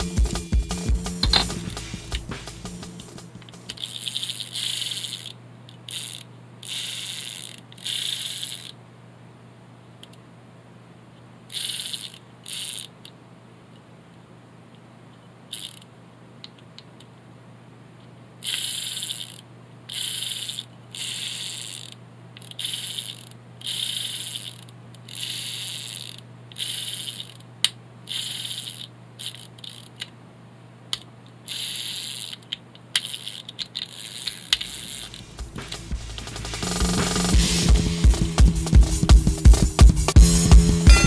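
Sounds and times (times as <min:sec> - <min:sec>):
faint steady hum: 0:00.0 - 0:38.1
fishing reel ratcheting: 0:03.5 - 0:08.8, 0:11.5 - 0:12.9, 0:15.5 - 0:15.9, 0:18.4 - 0:27.4, 0:28.1 - 0:30.1, 0:31.5 - 0:35.2.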